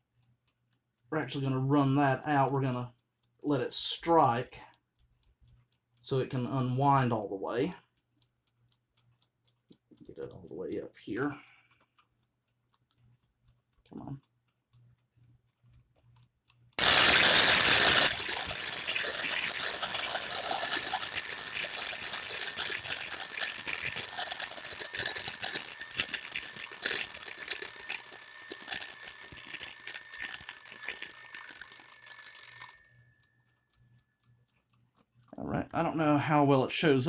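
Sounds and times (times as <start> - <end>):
alarm clock ringing: 16.8 - 33.3.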